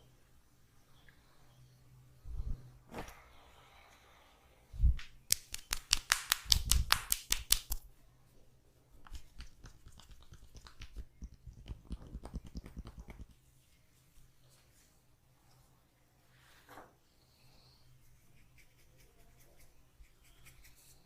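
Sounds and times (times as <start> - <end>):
hand slaps on body: 5.0 - 7.8
soft tapping patter: 9.0 - 13.4.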